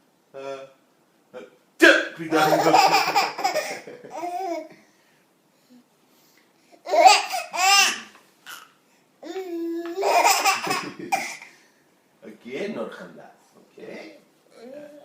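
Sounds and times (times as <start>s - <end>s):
baby laughing and babbling: 2.3s - 4.8s, 6.8s - 11.5s.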